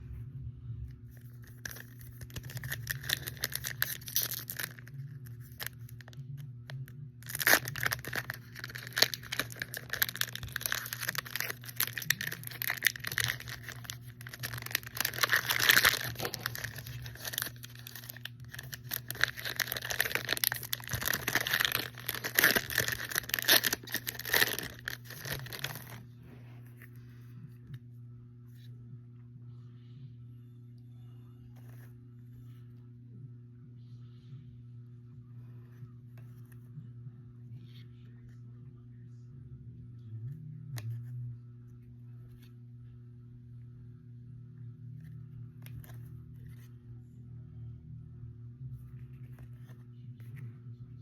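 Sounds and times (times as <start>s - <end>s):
low hum: 0.0s - 51.0s
cards rustling: 1.1s - 6.4s, 7.2s - 27.0s
foil wrapper tearing and crinkling: 1.4s - 6.2s, 7.2s - 26.0s.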